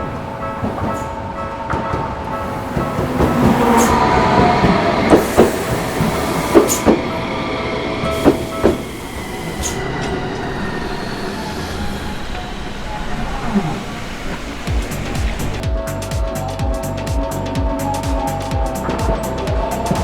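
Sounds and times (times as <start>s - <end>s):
steady ringing warning bell: 0.0s - 15.6s
train wheels clacking over rail joints: 0.0s - 15.6s.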